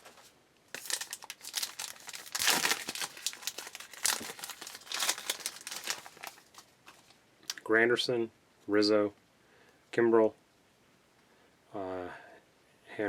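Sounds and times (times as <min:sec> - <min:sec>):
wrapper crinkling: 0:00.0 - 0:07.2.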